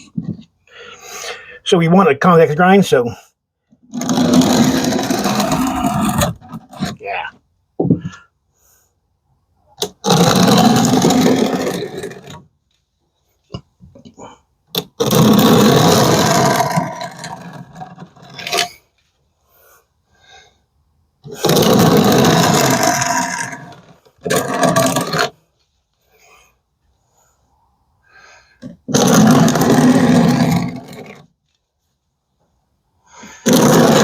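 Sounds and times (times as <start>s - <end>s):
blade scraping on sanding belt: 4.0s - 6.4s, 29.0s - 31.2s, 33.5s - 34.0s.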